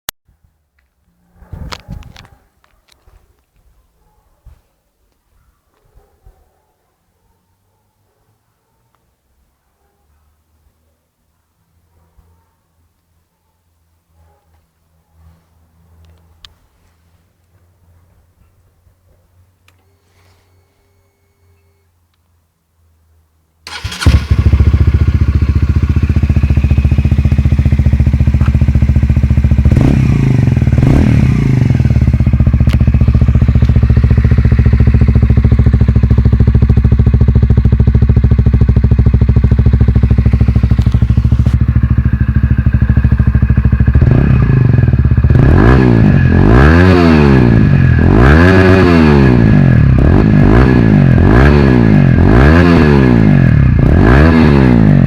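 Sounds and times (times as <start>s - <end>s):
motorcycle engine idling and revving: 23.7s - 55.0s.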